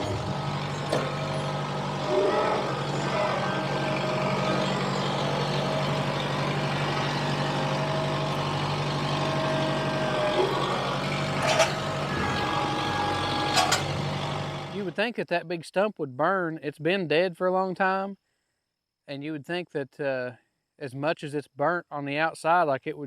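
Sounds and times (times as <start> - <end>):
thin whine: 0.0 - 14.8
diesel tractor engine running: 0.0 - 15.0.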